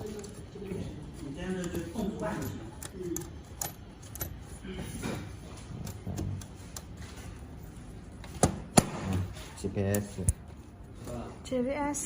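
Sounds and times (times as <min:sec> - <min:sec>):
connectors clicking: 0:01.2 - 0:04.6, 0:05.6 - 0:07.0.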